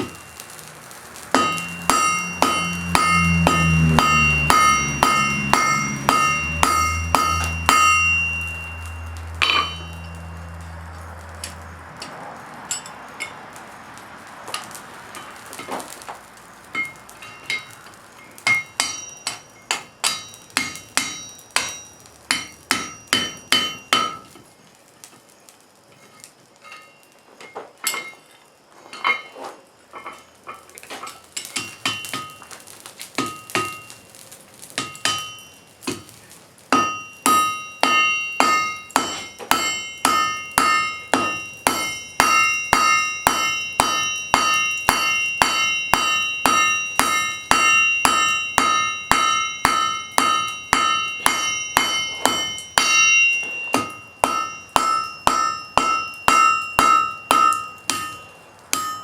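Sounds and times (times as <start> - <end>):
hammer striking iron on anvil: 0.0 - 13.4, 16.7 - 24.4, 26.6 - 28.2, 29.9 - 32.6, 33.2 - 34.0, 34.8 - 59.0
low hum: 1.4 - 12.1.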